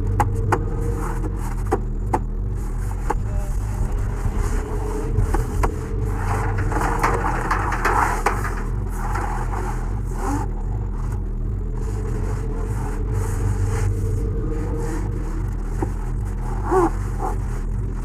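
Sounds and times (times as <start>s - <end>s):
washing machine humming: 0.0s - 18.0s
scraping and rustling: 2.5s - 11.1s.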